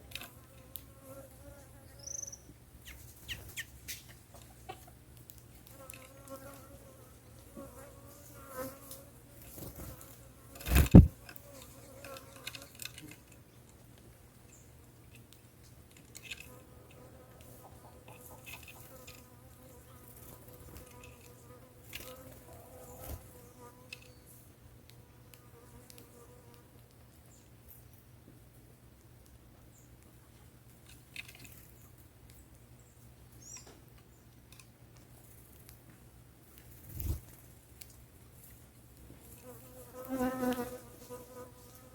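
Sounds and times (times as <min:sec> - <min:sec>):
faint insect buzz: 0:00.0 - 0:02.5, 0:05.7 - 0:12.9, 0:39.3 - 0:41.9
high falling bird chirp: 0:01.9 - 0:03.8.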